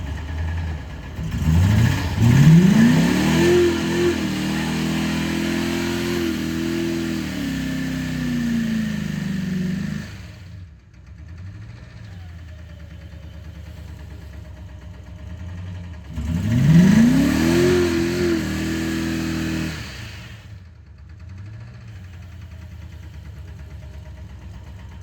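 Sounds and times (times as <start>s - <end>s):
engine revving with rod knock: 1.2s - 10.5s, 16.2s - 20.4s.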